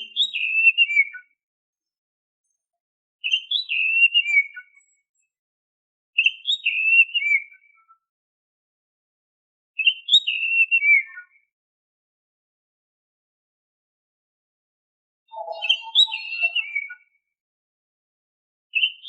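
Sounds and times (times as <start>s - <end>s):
bird whistling phrase: 0.0s - 1.3s, 9.8s - 11.4s, 15.3s - 17.1s.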